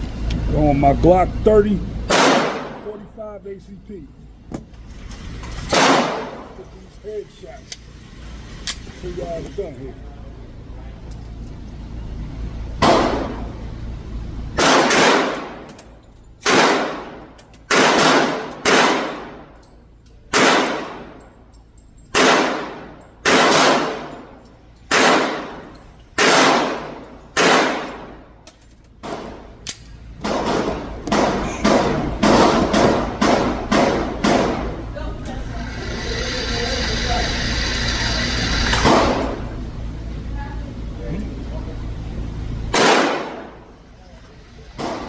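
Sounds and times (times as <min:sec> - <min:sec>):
pistol shots with ringing echo: 0:02.1 - 0:02.8, 0:05.7 - 0:06.5, 0:14.6 - 0:15.7, 0:16.4 - 0:19.6, 0:20.3 - 0:21.2, 0:22.1 - 0:28.2, 0:30.2 - 0:34.8, 0:42.7 - 0:43.7.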